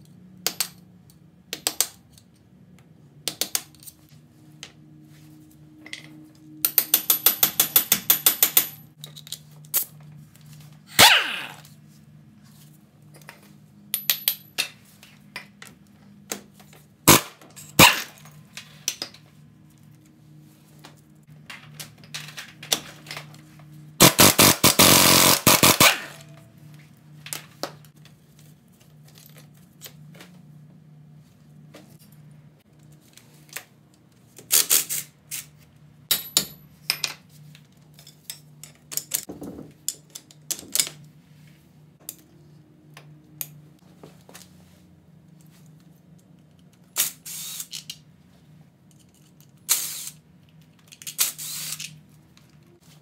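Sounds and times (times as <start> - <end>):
power tool stuttering: 24.0 - 26.1.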